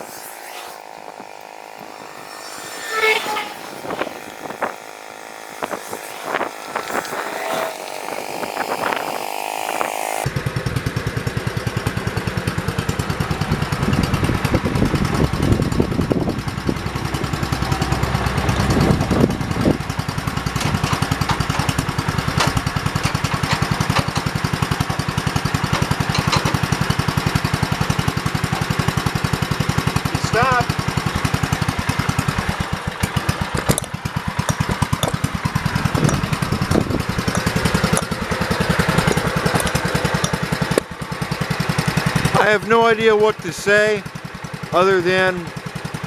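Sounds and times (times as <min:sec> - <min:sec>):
tractor engine running: 0:20.1 - 0:46.0.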